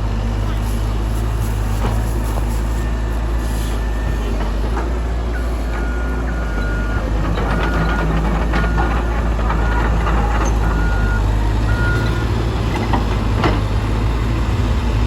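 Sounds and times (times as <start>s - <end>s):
machinery engine low rumble: 0.0s - 15.0s
reversing alarm beeping: 5.3s - 12.4s.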